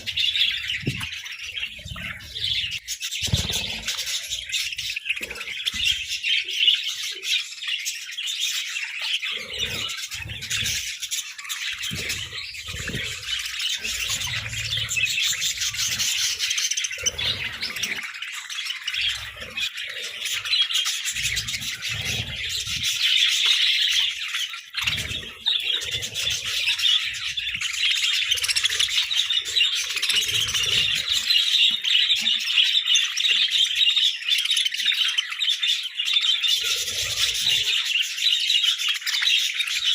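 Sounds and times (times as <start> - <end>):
budgerigars chattering: 0.0 - 39.9.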